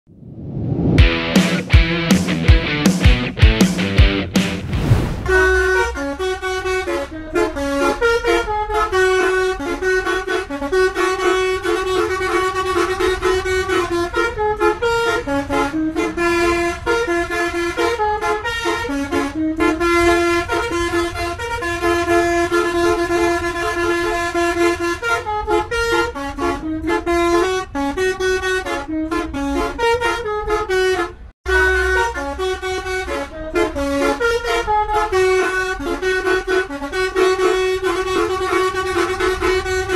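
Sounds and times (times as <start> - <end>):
low rumble: 0.1 - 1.3, 4.4 - 6.6
multi-tone horn melody: 5.2 - 39.9.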